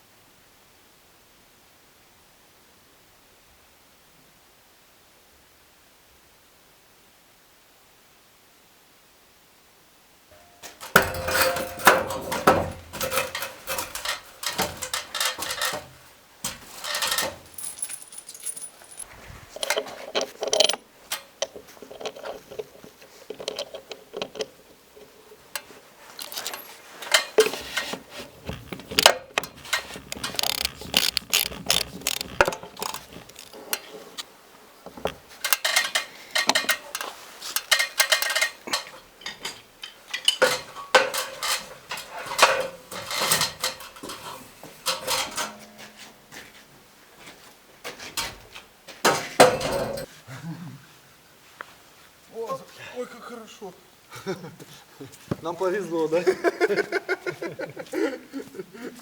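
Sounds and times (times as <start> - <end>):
metallic clinking and clattering: 10.8 - 15.9, 16.6 - 33.9.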